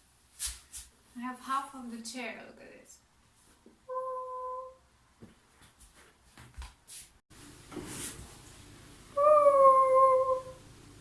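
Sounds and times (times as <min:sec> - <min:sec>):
person humming notes: 0:03.9 - 0:04.8, 0:09.2 - 0:10.6.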